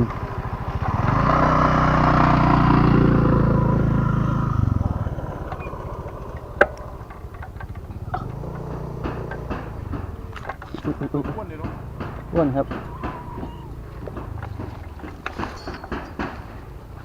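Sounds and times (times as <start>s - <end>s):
vehicle engine passing: 0.0s - 17.0s
faint ticks: 4.6s - 16.0s.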